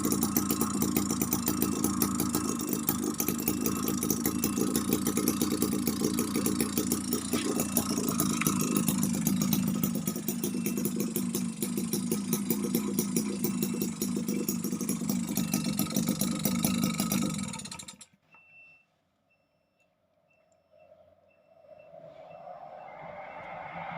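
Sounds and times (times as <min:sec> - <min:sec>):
miniature two-stroke engine running: 0:00.0 - 0:18.1.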